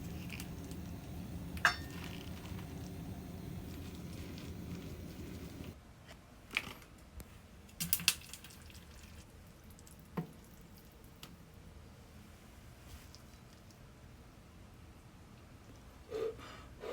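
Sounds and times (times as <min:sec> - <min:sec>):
cookware clinks and taps: 0:01.6 - 0:02.1.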